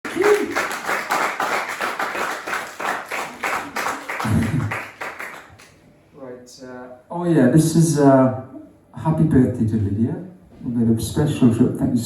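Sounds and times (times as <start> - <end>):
audience clapping: 0.0 - 5.8.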